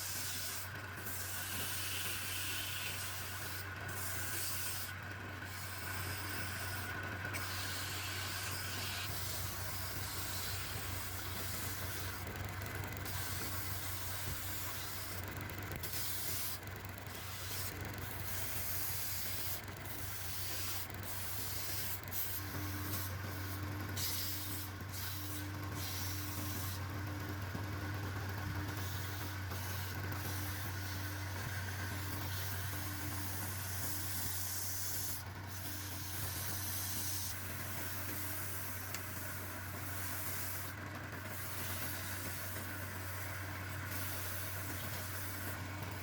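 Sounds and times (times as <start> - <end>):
power tool motor humming: 0.0 - 46.0
wood sanding hiss: 28.8 - 40.7.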